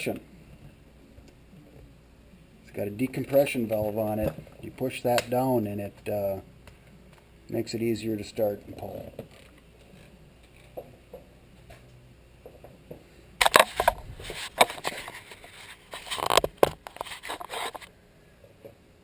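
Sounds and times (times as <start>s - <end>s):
chainsaw being handled scraping: 13.4s - 17.9s.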